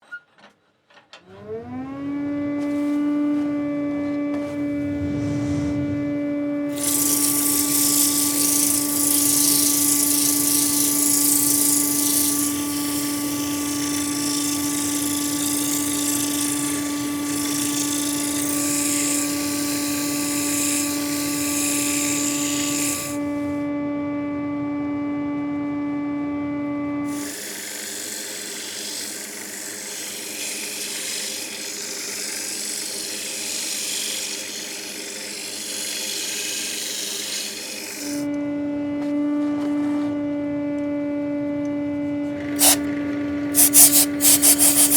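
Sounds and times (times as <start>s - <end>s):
lathe motor humming: 4.3s - 23.5s, 27.1s - 38.4s, 42.6s - 42.9s, 43.5s - 44.9s
sandpaper hissing on wood: 6.7s - 23.3s, 27.1s - 38.2s, 42.6s - 42.9s, 43.6s - 44.9s.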